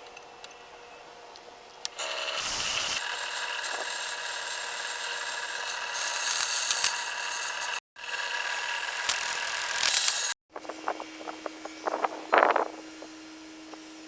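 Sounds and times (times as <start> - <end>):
power tool whining on steel: 2.0 - 10.4.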